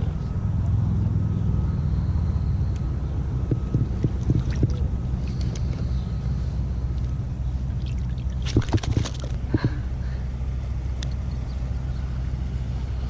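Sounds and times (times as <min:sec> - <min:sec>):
wind rumble on microphone: 0:02.3 - 0:06.2
light water splashes: 0:07.8 - 0:09.4.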